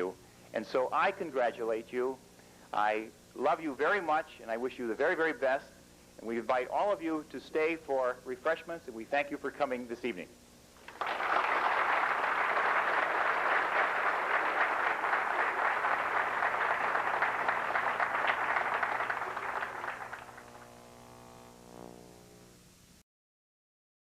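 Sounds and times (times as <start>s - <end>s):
audience applauding: 10.9s - 20.6s.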